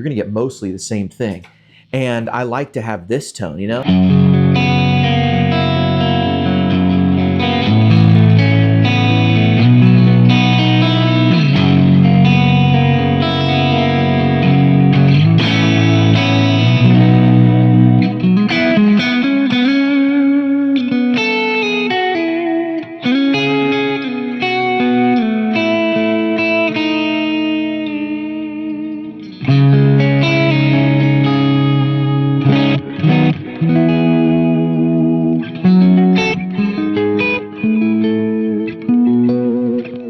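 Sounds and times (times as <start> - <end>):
clean electric guitar: 3.5 - 40.0
hard strummed guitar chord: 3.8 - 18.6.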